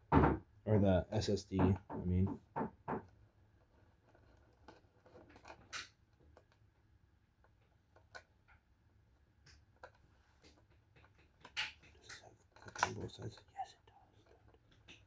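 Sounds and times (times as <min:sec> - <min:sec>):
faint clicks and taps: 0:07.4 - 0:15.0.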